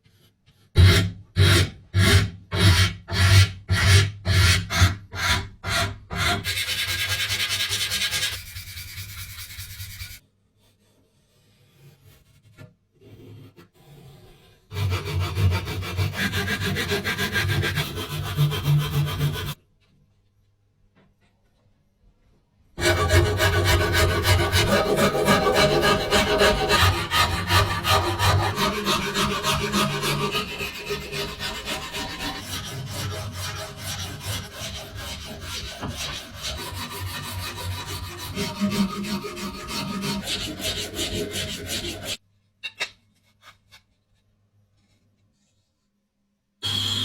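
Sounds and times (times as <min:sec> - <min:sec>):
hand rasping strokes: 0:04.5 - 0:19.6, 0:22.8 - 0:42.2.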